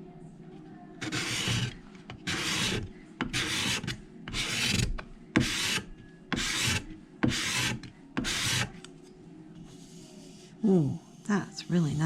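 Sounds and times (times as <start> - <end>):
scraper scraping wood: 1.0 - 8.8.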